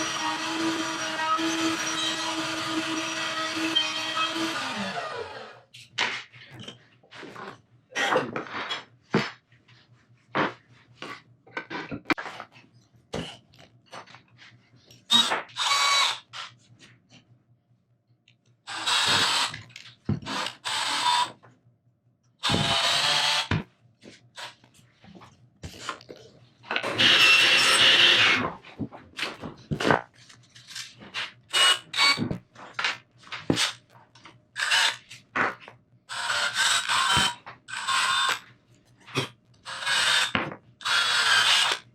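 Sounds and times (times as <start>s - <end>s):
power drill running: 0.0s - 5.6s, 18.7s - 19.6s, 20.3s - 21.3s, 22.4s - 23.6s, 27.0s - 28.4s, 36.1s - 38.4s, 39.7s - 41.8s.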